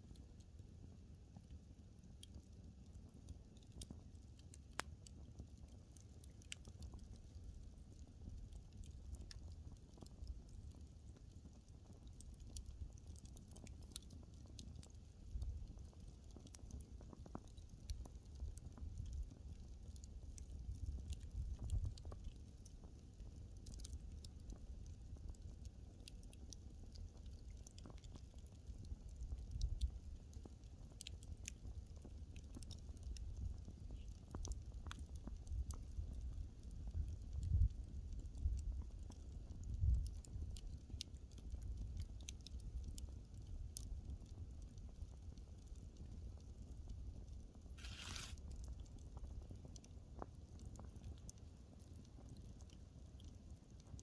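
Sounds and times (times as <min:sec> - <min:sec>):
low rumble of flames: 0:00.0 - 0:54.0
wood fire crackling: 0:00.0 - 0:54.0.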